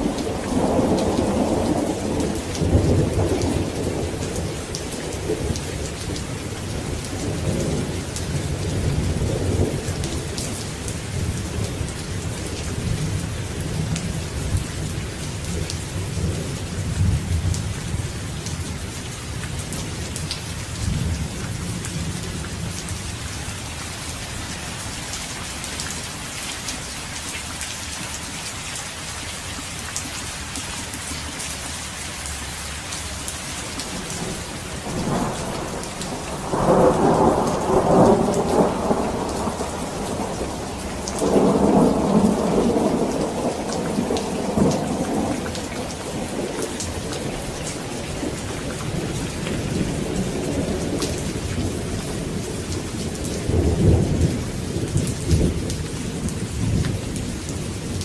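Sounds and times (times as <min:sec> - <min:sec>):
rolling thunder rumble: 0:00.0 - 0:18.2, 0:33.8 - 0:58.0
heavy rain: 0:00.0 - 0:58.0
raindrop patter: 0:00.0 - 0:58.0.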